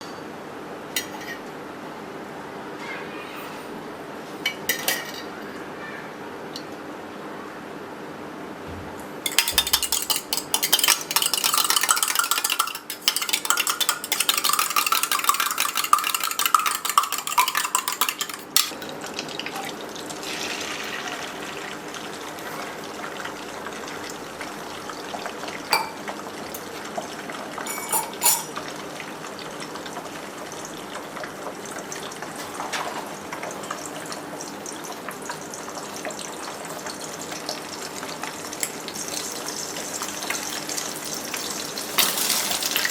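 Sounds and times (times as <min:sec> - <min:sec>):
food sizzling in a pan: 0:18.7 - 0:27.7, 0:28.4 - 0:42.9.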